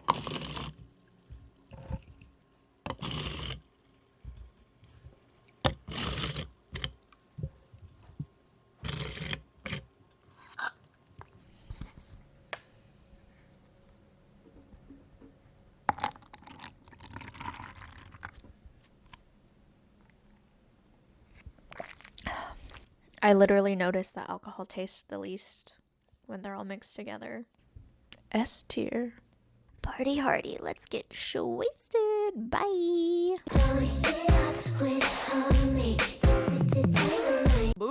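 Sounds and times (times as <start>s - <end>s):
liquid pouring: 0.0s - 0.8s, 15.9s - 18.4s.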